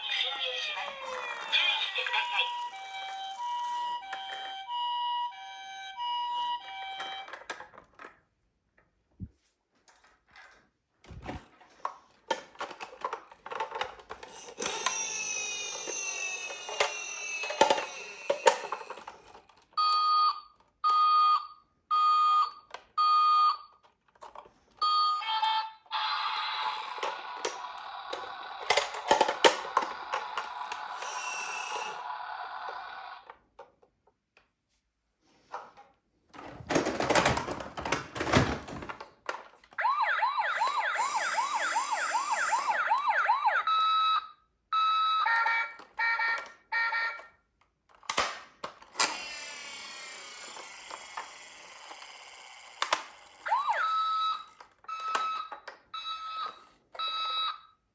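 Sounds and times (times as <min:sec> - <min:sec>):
plastic toys clicking and knocking: 0:00.0 - 0:04.8, 0:06.6 - 0:08.3, 0:11.3 - 0:19.8, 0:25.4 - 0:34.2, 0:35.5 - 0:40.0, 0:45.0 - 0:57.6.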